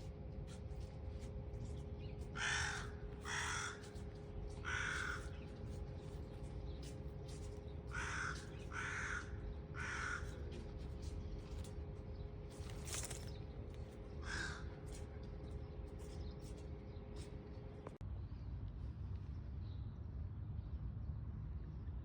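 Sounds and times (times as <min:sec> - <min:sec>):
crow cawing: 0:02.4 - 0:05.5, 0:07.9 - 0:10.5, 0:14.2 - 0:14.8.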